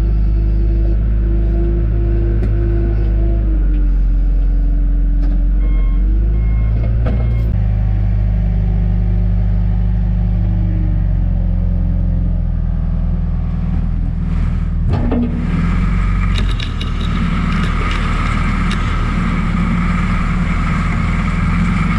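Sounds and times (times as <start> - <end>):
diesel engine running: 0.0 - 21.9
backup alarm beeping: 5.6 - 7.6.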